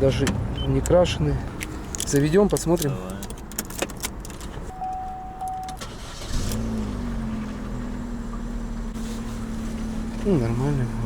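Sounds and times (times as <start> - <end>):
car engine starting and idling: 0.0 - 11.0
short electronic beep: 4.7 - 5.8.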